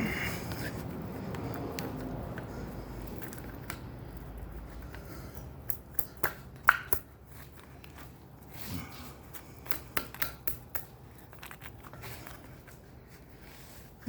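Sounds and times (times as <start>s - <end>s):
metallic clicks of chain and tools: 1.5s - 8.0s, 9.6s - 12.7s.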